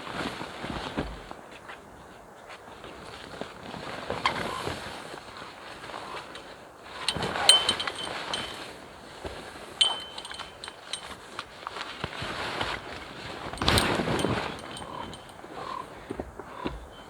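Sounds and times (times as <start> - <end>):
light metal clinks: 6.2 - 8.9, 9.5 - 17.0.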